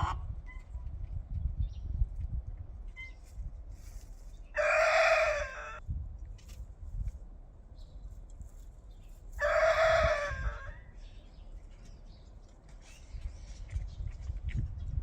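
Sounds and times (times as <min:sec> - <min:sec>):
rooster crowing: 0:04.6 - 0:05.8, 0:09.4 - 0:10.8.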